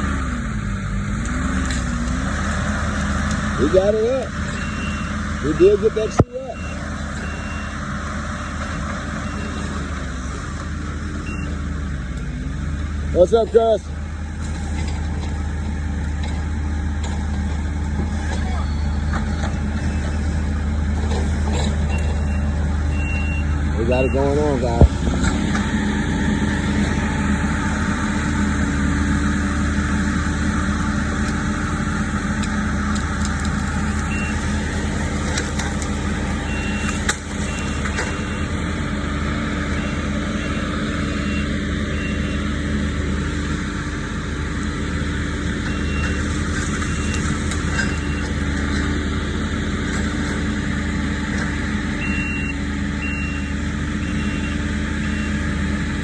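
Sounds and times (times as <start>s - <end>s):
diesel engine running: 0.0s - 56.0s
reversing alarm beeping: 4.5s - 7.8s, 8.4s - 9.8s, 11.2s - 11.6s, 18.5s - 20.4s, 21.9s - 24.9s, 36.4s - 38.7s, 39.6s - 42.6s, 45.6s - 48.4s, 52.0s - 55.6s.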